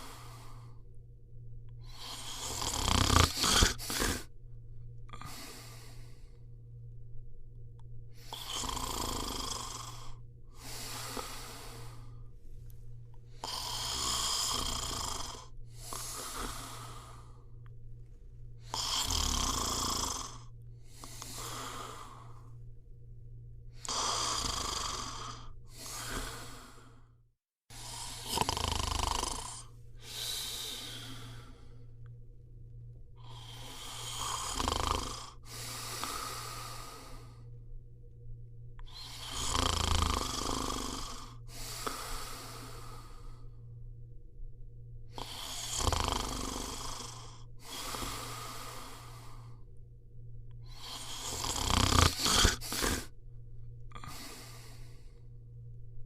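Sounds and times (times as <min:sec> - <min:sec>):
person snoring: 0:00.0 - 0:00.8, 0:01.8 - 0:04.3, 0:05.0 - 0:06.4, 0:08.2 - 0:12.3, 0:13.3 - 0:17.7, 0:18.6 - 0:22.6, 0:23.7 - 0:27.1, 0:27.7 - 0:32.0, 0:33.2 - 0:37.5, 0:38.8 - 0:43.6, 0:45.1 - 0:49.7, 0:50.6 - 0:53.2, 0:53.9 - 0:55.3
steady low hum: 0:00.0 - 0:56.0.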